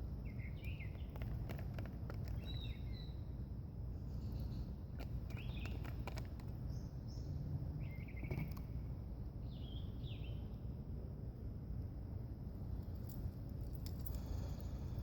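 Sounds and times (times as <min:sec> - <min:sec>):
steady low rumble: 0:00.0 - 0:15.0
birds chirping: 0:00.2 - 0:01.4, 0:02.2 - 0:03.4, 0:04.0 - 0:10.7.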